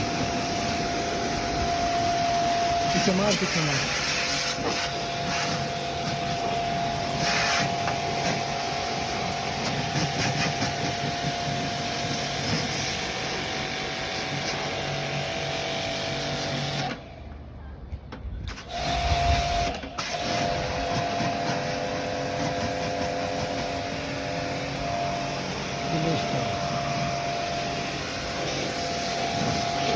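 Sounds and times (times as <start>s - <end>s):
pressure washer motor whine: 0.0s - 17.1s, 18.5s - 29.9s
hiss of spray: 2.8s - 13.1s, 20.1s - 29.9s.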